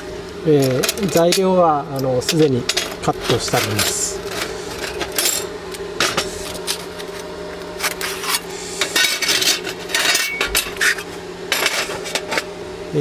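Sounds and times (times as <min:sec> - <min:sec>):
sheet steel pieces clattering: 0:02.3 - 0:05.5, 0:07.8 - 0:12.4.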